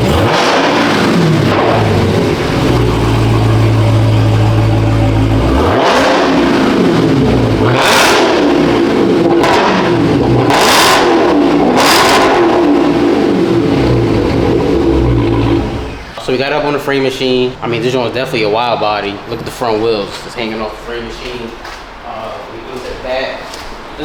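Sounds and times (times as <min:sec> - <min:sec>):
car engine revving: 0:00.0 - 0:16.2.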